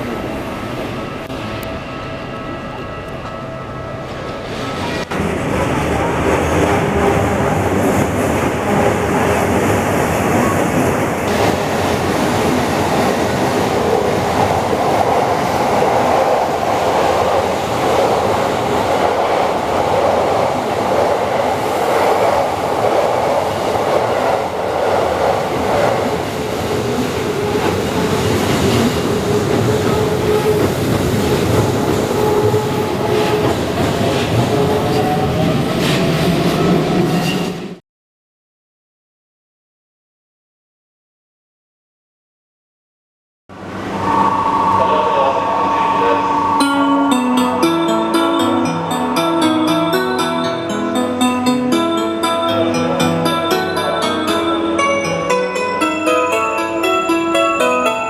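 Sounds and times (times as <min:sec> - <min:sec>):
train whine: 0:00.0 - 0:37.8, 0:43.5 - 0:58.0
train wheels rumbling on rails: 0:04.0 - 0:37.8.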